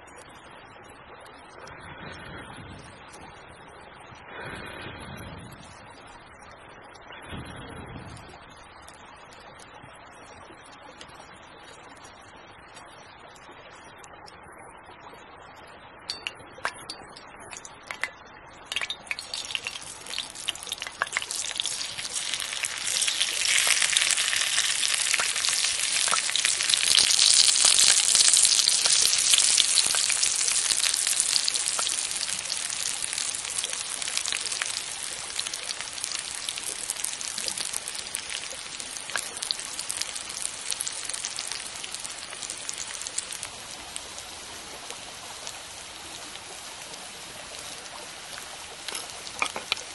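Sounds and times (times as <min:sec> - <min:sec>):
food sizzling in a pan: 0:16.1 - 0:18.1, 0:18.7 - 0:49.9
campfire crackling: 0:16.1 - 0:49.9.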